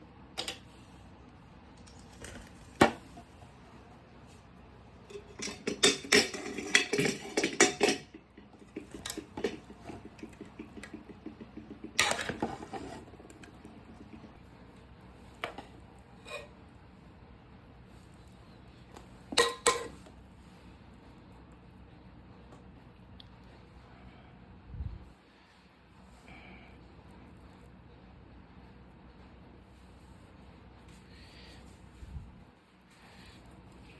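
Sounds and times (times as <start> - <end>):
utensils clinking on dishes: 5.1 - 14.2, 19.3 - 20.0.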